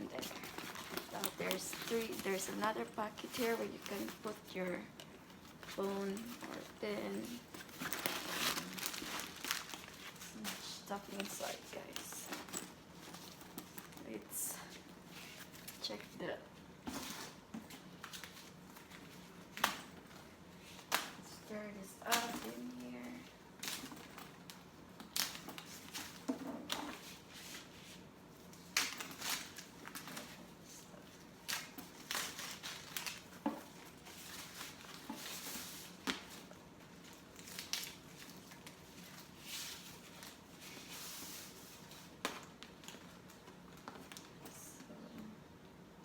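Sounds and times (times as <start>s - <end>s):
packing stuffing crinkling: 0.1s - 14.1s, 28.4s - 44.3s.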